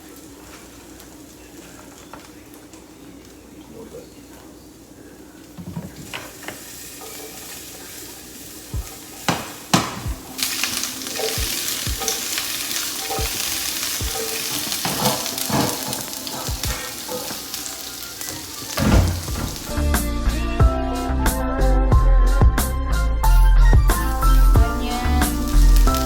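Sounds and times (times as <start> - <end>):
potatoes sizzling in hot oil: 6.0 - 19.8, 24.2 - 26.0
utensil stirring and knocking pan: 8.6 - 19.8.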